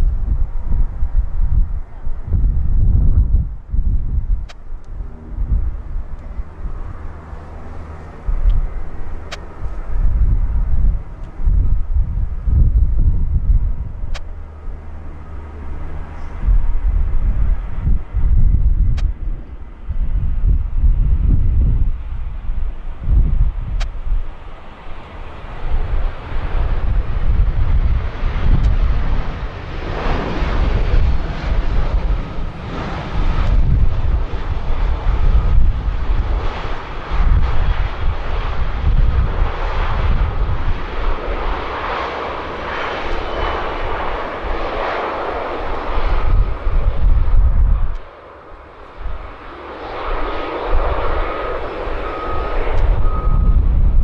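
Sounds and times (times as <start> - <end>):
jet airliner engines passing: 0.0 - 54.0
wind buffeting microphone: 0.0 - 54.0
faint beeping: 51.6 - 53.6.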